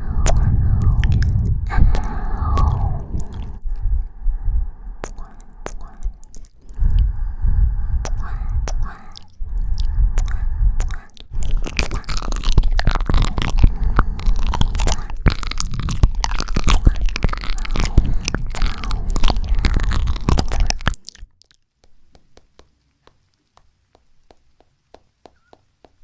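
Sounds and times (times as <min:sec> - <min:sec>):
breath on microphone: 0:00.0 - 0:21.1
wet kissing mouth sounds: 0:05.0 - 0:06.8.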